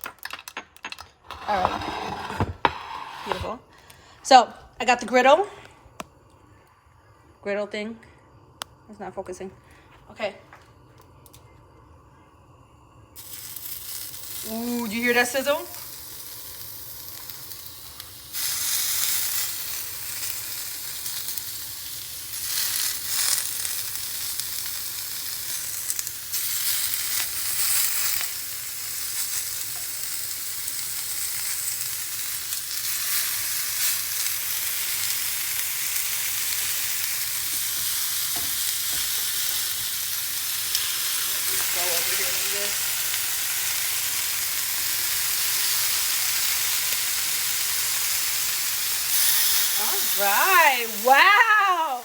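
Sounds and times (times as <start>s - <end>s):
meat sizzling on a griddle: 13.2s - 52.0s.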